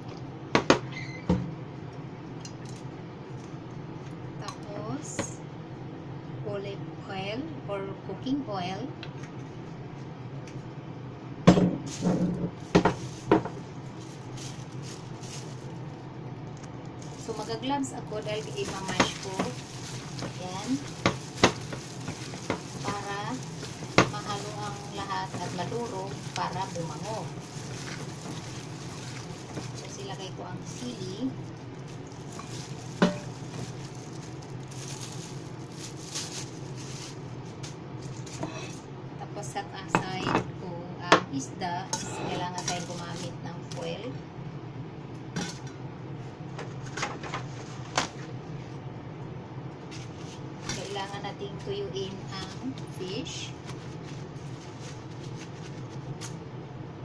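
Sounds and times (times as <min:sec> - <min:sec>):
steady low hum: 0:00.0 - 0:57.0
kitchenware clinking against a bowl: 0:32.4 - 0:33.3.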